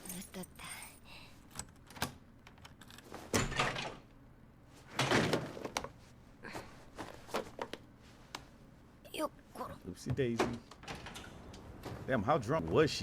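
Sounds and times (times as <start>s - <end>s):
door opening and closing: 3.2s - 4.0s, 10.3s - 12.2s.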